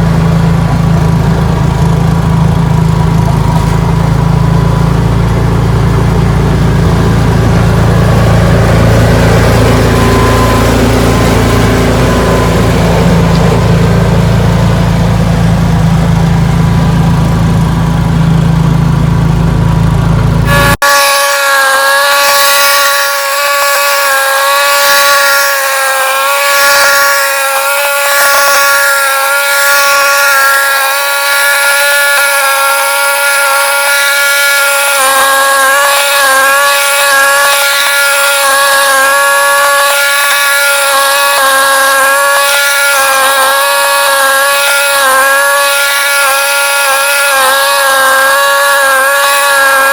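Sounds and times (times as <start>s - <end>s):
high whining engine note: 0.0s - 49.9s
snowblower engine deep rumble: 0.0s - 49.9s.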